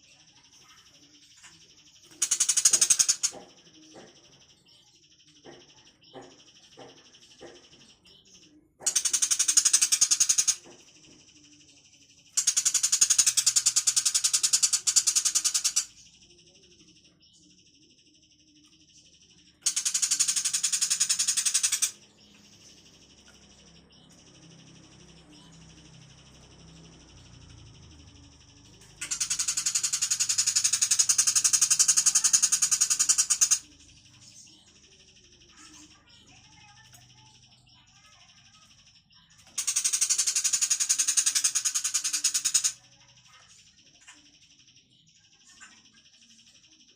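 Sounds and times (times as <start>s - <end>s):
bird harsh chattering rattle: 0.2s - 4.4s, 8.8s - 11.0s, 12.2s - 16.1s, 19.6s - 25.5s, 28.6s - 44.2s.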